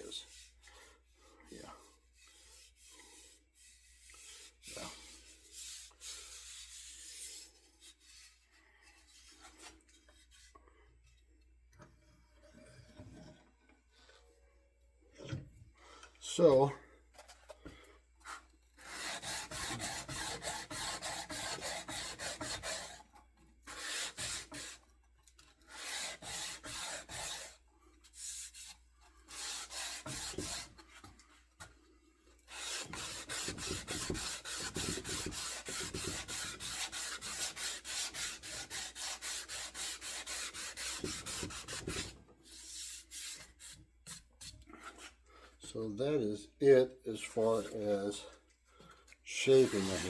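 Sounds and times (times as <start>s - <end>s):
abrasive tool scraping wood: 18.2s - 24.8s, 25.5s - 31.7s, 32.5s - 45.2s, 49.3s - 50.0s.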